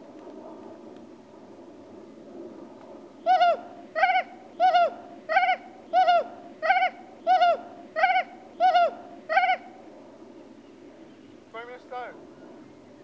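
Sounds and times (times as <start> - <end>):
bird calling: 3.2 - 9.9.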